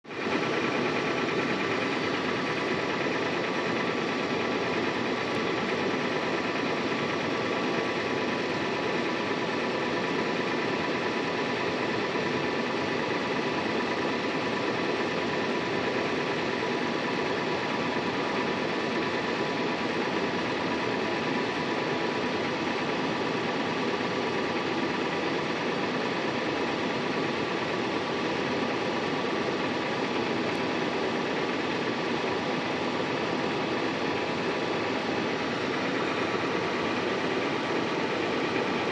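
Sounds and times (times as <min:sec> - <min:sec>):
car engine idling with loud knocking: 0:00.1 - 0:38.9.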